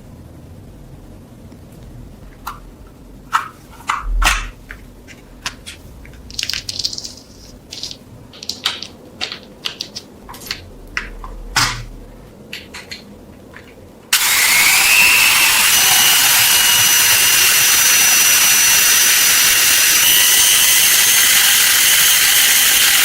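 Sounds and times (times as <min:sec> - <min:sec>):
hissing scrub: 0:14.1 - 0:23.0.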